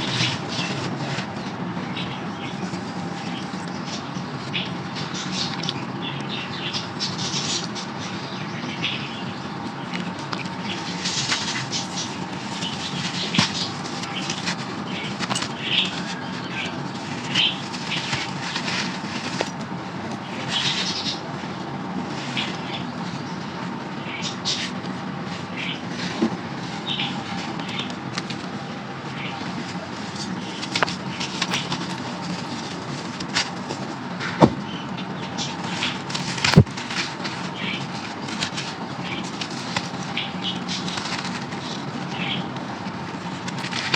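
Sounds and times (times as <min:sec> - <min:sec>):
baked clay crunching in a pot: 0:10.0 - 0:20.6, 0:29.4 - 0:34.2, 0:35.4 - 0:43.9
sand-clay chunks crunching: 0:30.2 - 0:33.7, 0:36.0 - 0:37.3.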